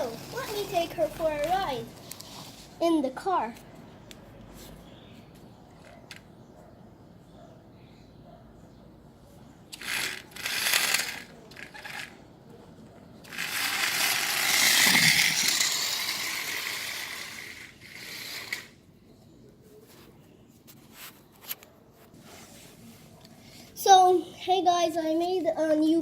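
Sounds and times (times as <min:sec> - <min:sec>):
toy car scraping across floor: 0:00.0 - 0:02.7, 0:09.8 - 0:12.2, 0:13.2 - 0:18.8.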